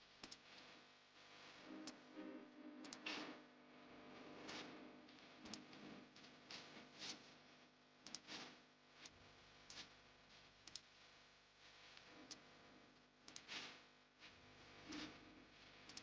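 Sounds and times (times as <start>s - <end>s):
faint sharp clicks: 8.0s - 8.3s, 10.7s - 10.9s, 13.3s - 13.7s.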